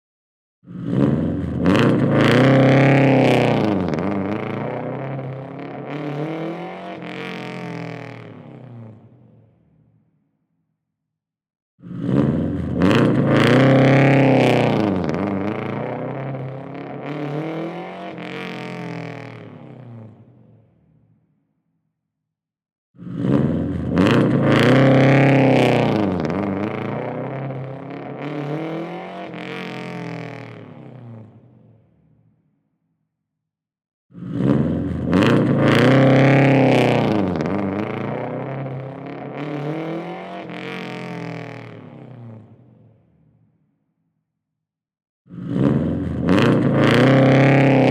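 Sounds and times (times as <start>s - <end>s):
car engine starting and revving: 0.7s - 9.2s, 11.8s - 20.4s, 23.0s - 31.6s, 34.2s - 42.6s, 45.3s - 47.9s.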